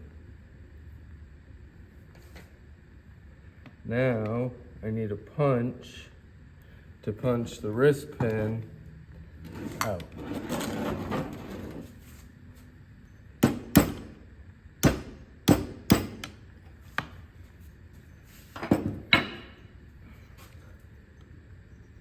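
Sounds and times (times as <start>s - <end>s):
hammer striking metal punch: 13.4s - 14.2s, 14.8s - 16.4s.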